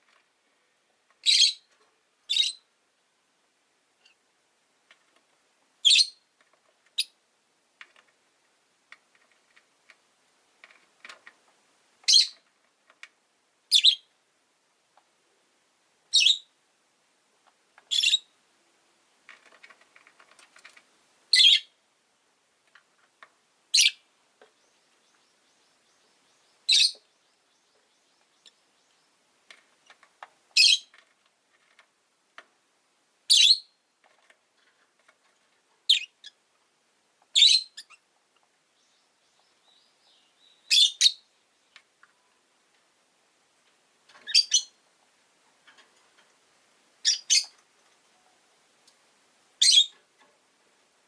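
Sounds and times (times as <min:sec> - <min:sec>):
lovebirds high-pitched chirps: 0:01.2 - 0:01.7, 0:02.3 - 0:02.7, 0:05.8 - 0:06.3, 0:07.0 - 0:07.2, 0:12.0 - 0:12.4, 0:13.7 - 0:14.1, 0:16.1 - 0:16.5, 0:17.9 - 0:18.3, 0:21.3 - 0:21.8, 0:23.7 - 0:24.0, 0:24.6 - 0:29.1, 0:30.6 - 0:30.9, 0:33.3 - 0:33.8, 0:35.9 - 0:36.4, 0:37.3 - 0:38.0, 0:38.8 - 0:41.3, 0:44.2 - 0:44.8, 0:47.0 - 0:47.6, 0:49.6 - 0:50.0.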